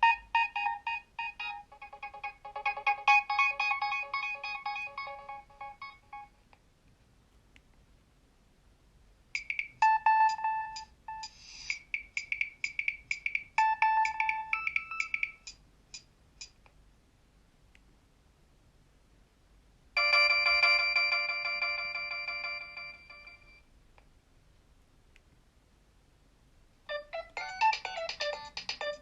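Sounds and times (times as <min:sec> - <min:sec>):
polyphonic ringtone: 0:00.0 - 0:06.4, 0:09.4 - 0:15.6, 0:20.0 - 0:23.6, 0:26.9 - 0:29.0.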